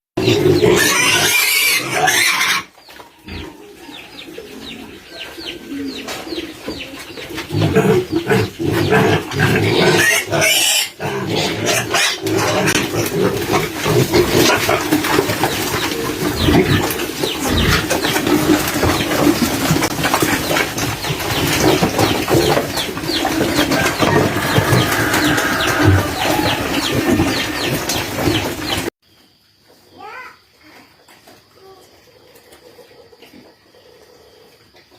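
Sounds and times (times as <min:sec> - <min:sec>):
pigs grunting: 0:00.2 - 0:03.6, 0:07.4 - 0:20.2, 0:21.1 - 0:27.9.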